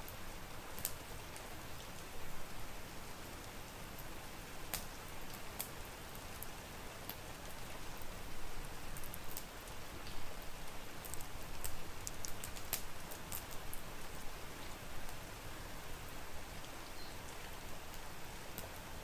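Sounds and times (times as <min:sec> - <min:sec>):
steady rain: 0:00.0 - 0:19.0
wood fire crackling and popping: 0:00.7 - 0:02.1, 0:04.7 - 0:05.8, 0:08.8 - 0:14.2.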